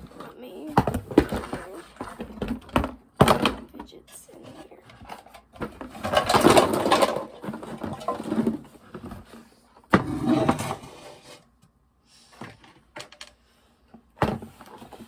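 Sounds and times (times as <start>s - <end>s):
plastic toys rattling in a box: 0.0s - 8.7s.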